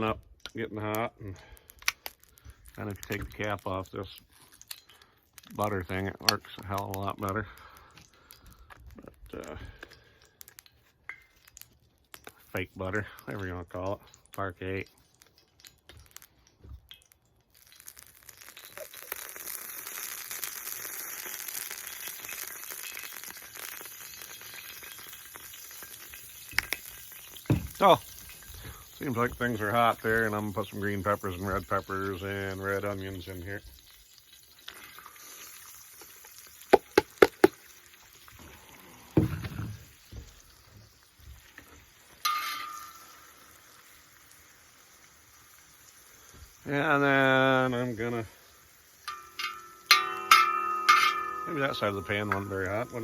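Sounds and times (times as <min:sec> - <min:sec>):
oil sizzling in a pan: 0:01.3 - 0:53.0
vegetables knocking on steel disc: 0:36.7 - 0:37.6
metallic clatter: 0:42.2 - 0:43.2, 0:49.1 - 0:53.0.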